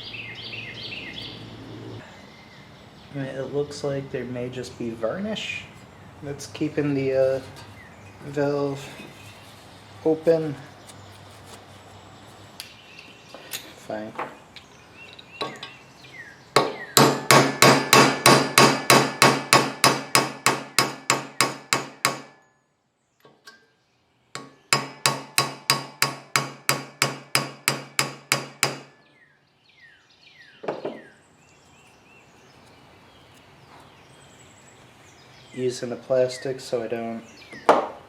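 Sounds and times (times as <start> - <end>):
hammer tapping rapidly: 17.0 - 22.3, 24.4 - 28.8.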